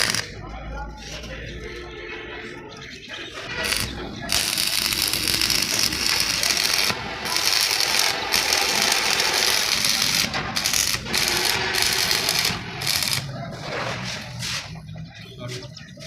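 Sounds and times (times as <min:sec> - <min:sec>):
welding arc crackling: 0:00.0 - 0:00.4, 0:03.4 - 0:14.7.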